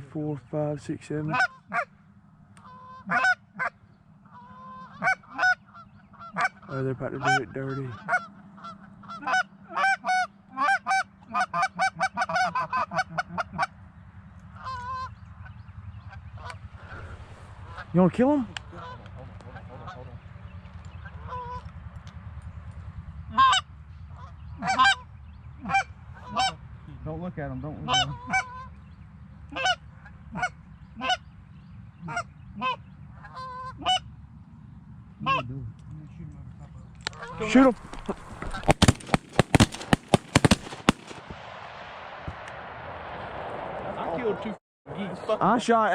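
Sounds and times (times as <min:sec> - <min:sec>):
goose honking: 0:01.1 - 0:02.0, 0:02.6 - 0:13.8, 0:14.5 - 0:20.3, 0:21.0 - 0:21.7, 0:23.3 - 0:26.7, 0:27.7 - 0:28.8, 0:29.5 - 0:31.3, 0:32.0 - 0:34.1, 0:35.2 - 0:35.5, 0:37.0 - 0:41.0.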